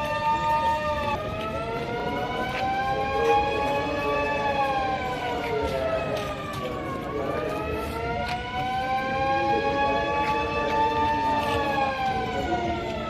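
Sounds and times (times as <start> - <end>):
alarm siren wailing: 0.0 - 13.0.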